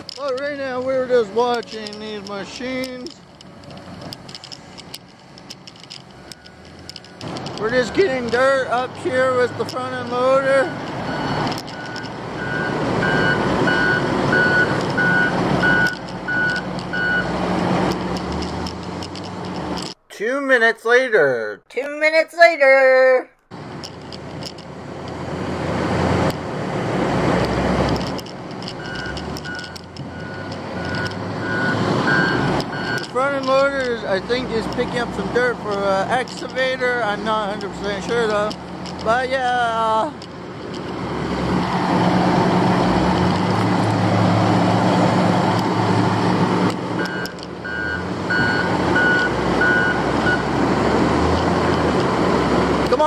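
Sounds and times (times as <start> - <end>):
diesel loader engine working: 0.0 - 20.1, 23.5 - 53.0
reversing alarm beeping: 10.6 - 17.3, 28.8 - 33.0, 47.0 - 50.5.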